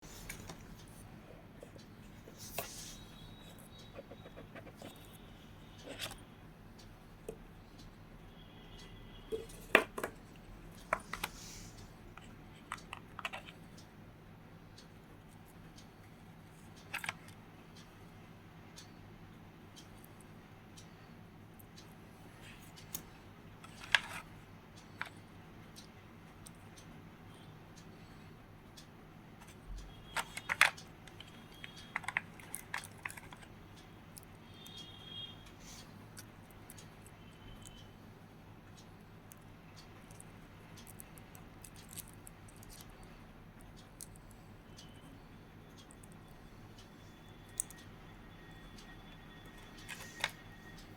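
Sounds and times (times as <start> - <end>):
light clicks and taps handling packaging: 0.1 - 0.9, 9.3 - 13.6, 16.8 - 17.4, 22.9 - 24.3, 29.4 - 33.5, 49.6 - 50.5.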